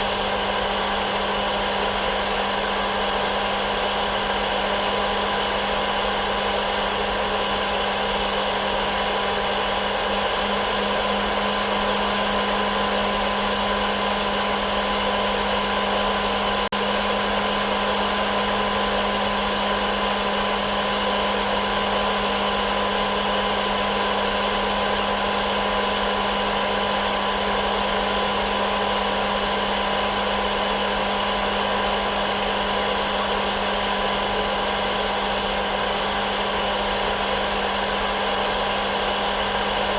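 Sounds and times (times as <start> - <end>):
hair dryer running: 0.0 - 39.9.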